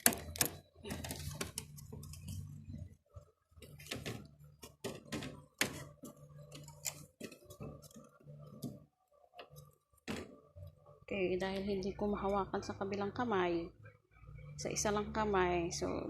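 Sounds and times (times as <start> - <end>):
plastic cover clicks and knocks: 0.0 - 2.1, 3.6 - 8.8.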